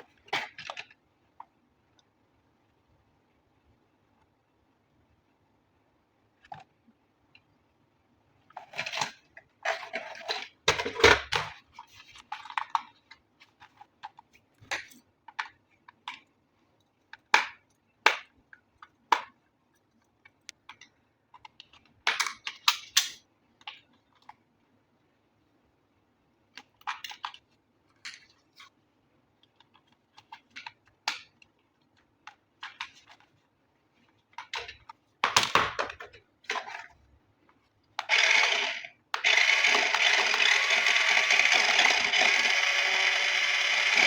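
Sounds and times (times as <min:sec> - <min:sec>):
plastic parts clicking and knocking: 0:00.0 - 0:02.1, 0:08.5 - 0:24.5, 0:26.5 - 0:28.8, 0:29.4 - 0:33.4, 0:34.0 - 0:44.0
packaging rustling and scraping: 0:08.5 - 0:11.0.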